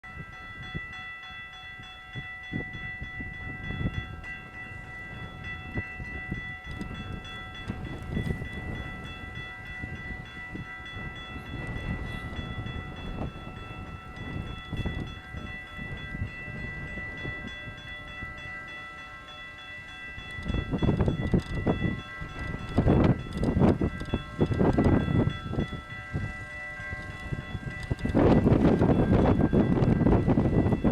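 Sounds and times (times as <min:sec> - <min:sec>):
freight train rumble: 0:00.0 - 0:30.9.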